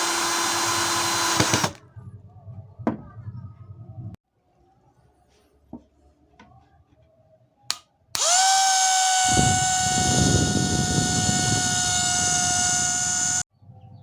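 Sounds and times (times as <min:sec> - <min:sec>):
electric motor high whine: 0:00.0 - 0:01.8, 0:08.2 - 0:13.4.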